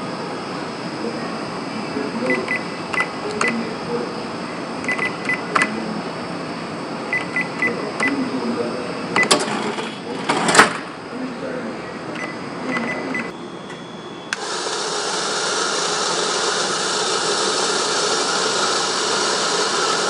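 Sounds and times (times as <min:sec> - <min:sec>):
cash register keypad beeps: 0:04.9 - 0:05.7, 0:07.1 - 0:08.2, 0:09.2 - 0:09.5, 0:12.2 - 0:14.4.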